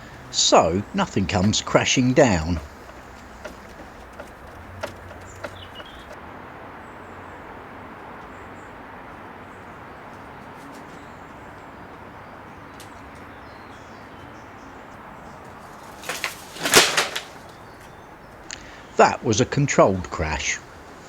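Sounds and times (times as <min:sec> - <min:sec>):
light knocks: 0:00.0 - 0:06.2
outdoor background hiss: 0:00.0 - 0:21.0.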